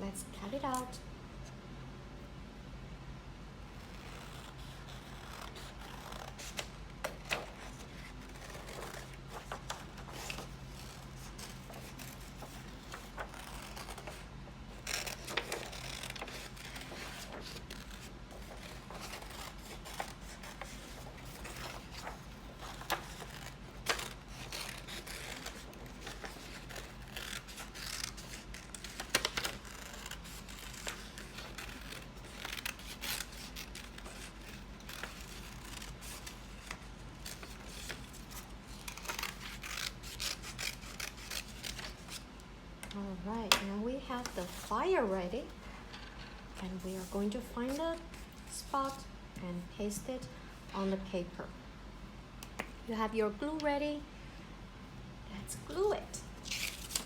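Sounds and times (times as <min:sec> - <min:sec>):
scissors snipping paper: 0:04.0 - 0:14.2, 0:14.8 - 0:42.2.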